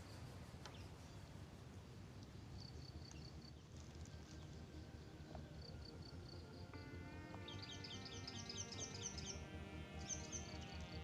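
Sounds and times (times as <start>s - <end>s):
insect chirping: 0.0s - 4.9s.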